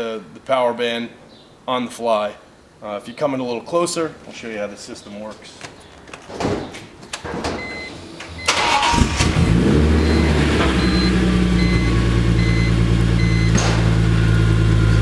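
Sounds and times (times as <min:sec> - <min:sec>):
car engine starting and idling: 0:07.5 - 0:15.0
car warning chime beeping: 0:07.6 - 0:15.0.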